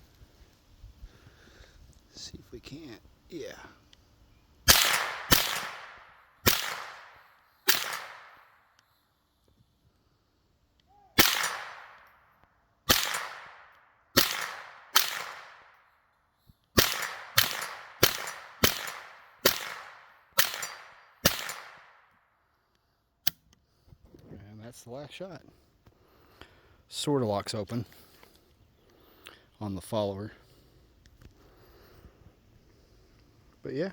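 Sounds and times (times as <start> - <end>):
rifle shots cracking: 4.7 - 8.6, 11.2 - 12.2, 12.9 - 15.8, 16.8 - 22.0.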